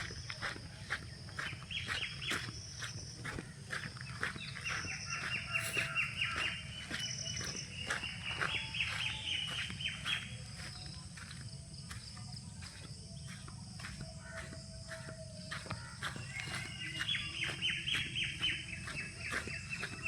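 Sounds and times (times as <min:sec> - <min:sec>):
birds chirping: 0:00.0 - 0:20.0.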